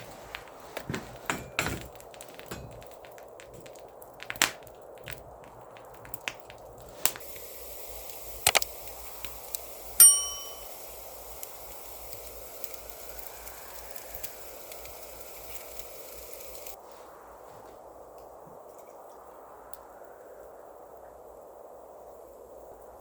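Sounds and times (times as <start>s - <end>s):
metal cookware clanging: 0.0s - 6.4s, 10.0s - 10.8s
light metal clinks: 0.0s - 7.2s, 10.0s - 11.1s
steady hiss: 0.0s - 23.0s.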